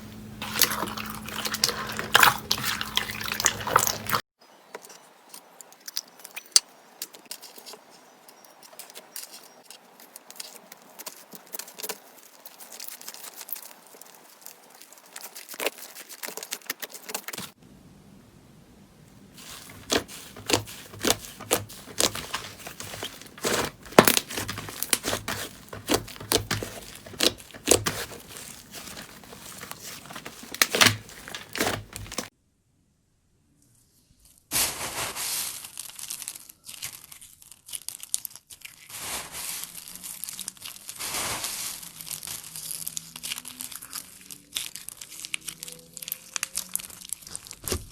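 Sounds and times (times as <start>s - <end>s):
slime crackling and popping: 8.7s - 17.6s, 19.4s - 32.3s, 35.7s - 47.9s.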